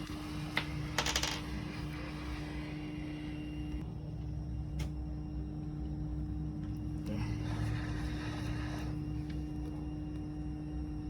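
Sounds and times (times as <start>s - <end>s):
hot air blower blowing: 0.0s - 0.8s.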